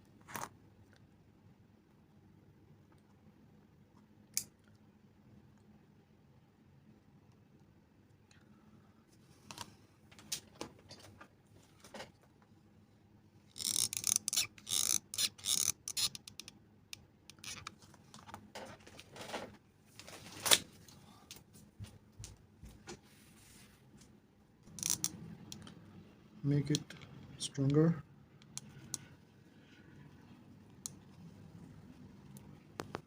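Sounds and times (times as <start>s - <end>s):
crinkly rustling: 17.9s - 21.0s.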